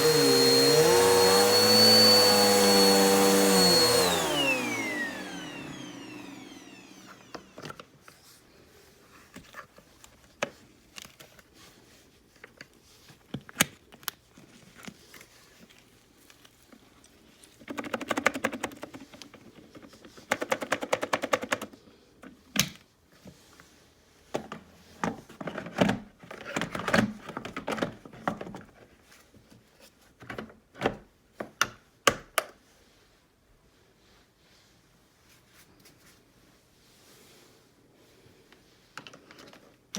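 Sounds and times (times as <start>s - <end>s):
vacuum cleaner motor winding down: 0.0s - 7.9s.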